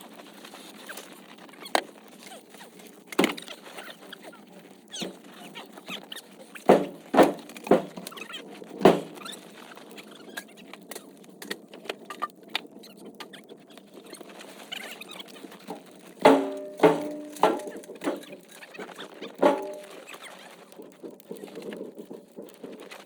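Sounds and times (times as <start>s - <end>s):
wood fire crackling and popping: 0.0s - 23.0s.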